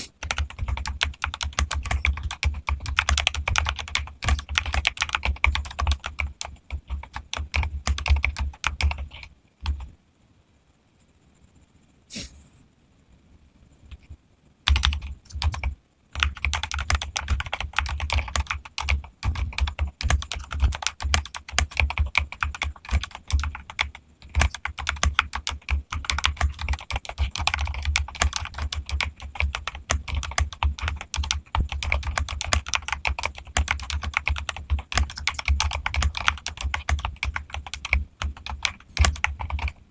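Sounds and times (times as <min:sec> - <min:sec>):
mechanical keyboard typing: 0:00.2 - 0:09.9, 0:14.6 - 0:39.8.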